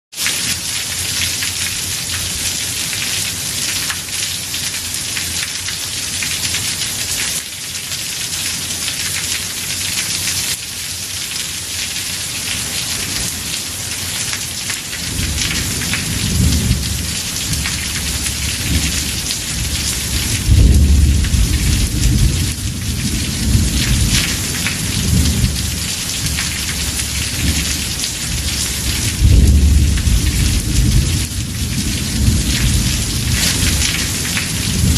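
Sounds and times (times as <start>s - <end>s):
heavy rain on a roof: 0.1s - 34.9s
thunder rumbling: 15.0s - 34.9s.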